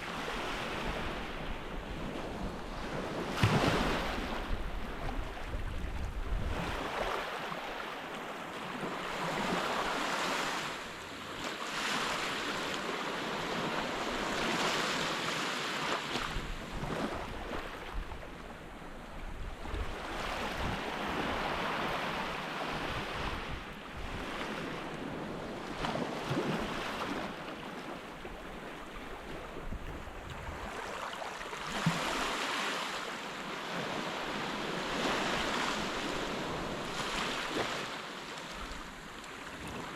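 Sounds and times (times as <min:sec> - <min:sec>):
wind rumbling on microphone: 0:00.3 - 0:07.4, 0:16.2 - 0:27.4, 0:28.2 - 0:31.0.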